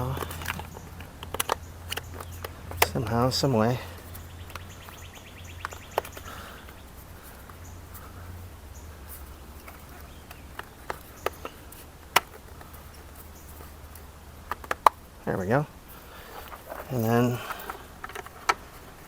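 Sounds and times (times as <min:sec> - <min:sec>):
steady low hum: 0:00.0 - 0:19.0
plastic clicks and taps: 0:00.1 - 0:03.0, 0:05.6 - 0:06.8, 0:09.6 - 0:12.7, 0:13.9 - 0:15.0, 0:17.5 - 0:18.8.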